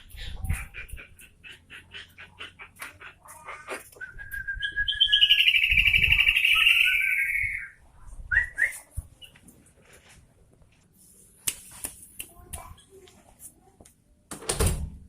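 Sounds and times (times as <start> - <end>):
bird singing: 4.0 - 7.8.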